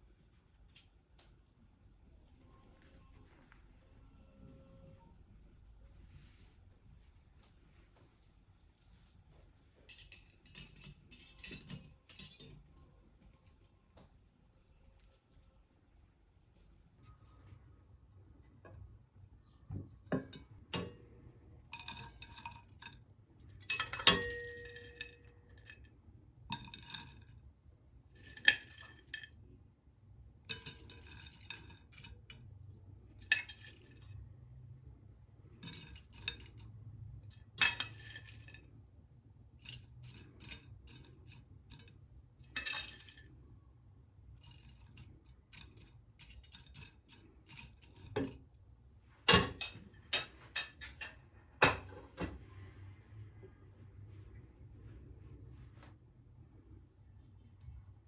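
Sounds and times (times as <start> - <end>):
cutlery and dishes clinking: 9.9 - 13.7, 21.7 - 25.9, 28.2 - 29.4, 30.4 - 32.5, 33.1 - 34.2, 35.5 - 38.7, 39.6 - 43.4, 44.4 - 48.6, 49.2 - 52.3.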